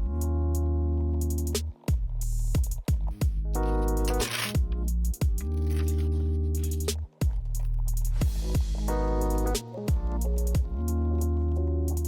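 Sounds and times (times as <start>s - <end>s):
deep bass: 0.0s - 12.0s
kick drum hits: 1.9s - 3.4s, 4.6s - 5.5s, 7.2s - 7.4s, 8.2s - 8.8s, 9.9s - 10.8s.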